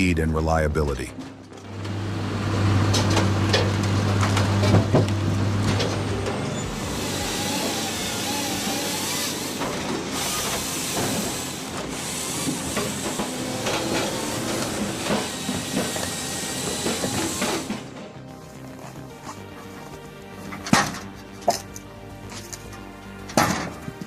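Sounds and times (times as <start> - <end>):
machinery hissing: 5.3 - 18.0.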